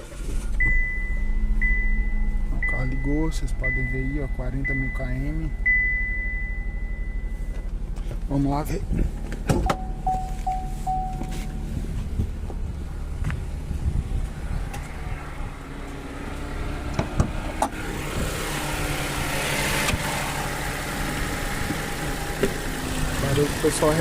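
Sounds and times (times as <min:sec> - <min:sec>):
car engine idling with ticking: 0:00.0 - 0:14.8, 0:15.4 - 0:24.0.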